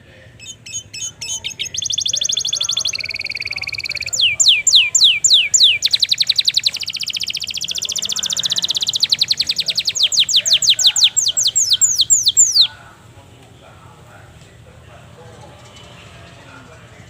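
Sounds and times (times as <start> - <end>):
canary singing trills and whistles: 0.4 - 12.8.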